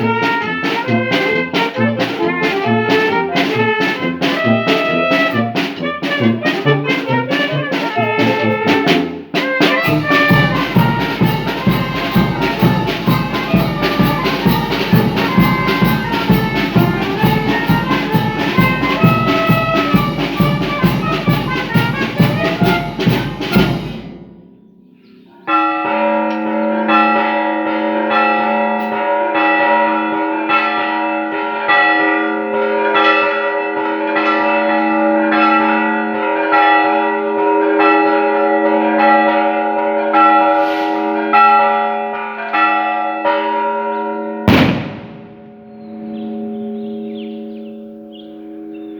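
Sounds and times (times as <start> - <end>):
brass band playing lively tune: 0.0 - 24.4, 40.2 - 41.7, 44.5 - 45.5
church bells ringing: 0.0 - 48.9.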